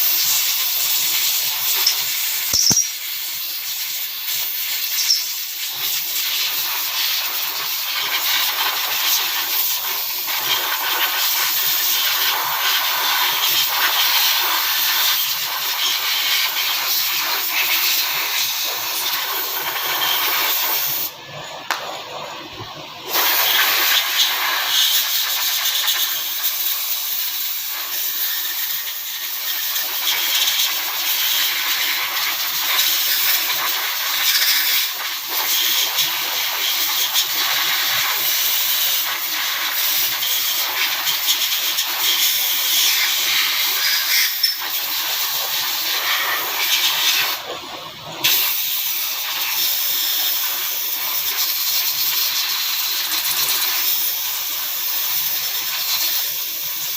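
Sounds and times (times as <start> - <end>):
loud steady hiss: 0.0 - 47.5, 48.2 - 56.9.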